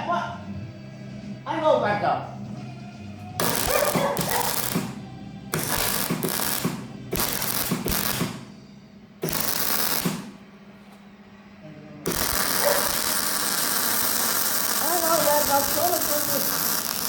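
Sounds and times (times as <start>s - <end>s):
arc welding crackling: 3.4s - 8.5s, 9.2s - 10.5s, 12.0s - 17.0s.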